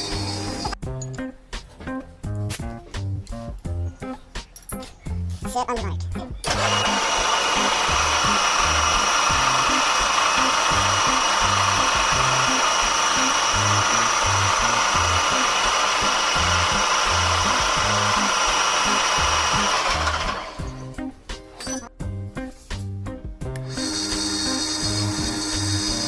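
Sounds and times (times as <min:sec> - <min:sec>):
power tool whining: 0:00.0 - 0:00.8, 0:06.4 - 0:20.9, 0:23.6 - 0:26.0
background music with bass line: 0:00.0 - 0:15.6, 0:16.2 - 0:26.0.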